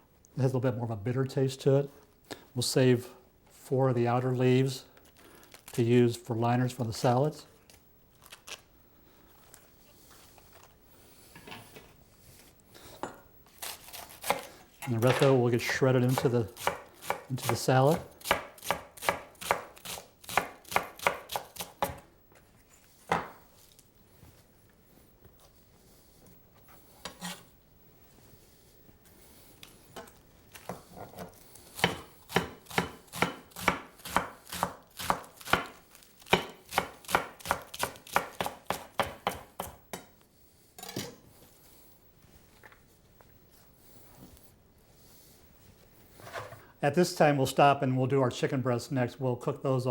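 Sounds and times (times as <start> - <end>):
knife chopping on cutting board: 16.0 - 22.0, 30.7 - 40.1.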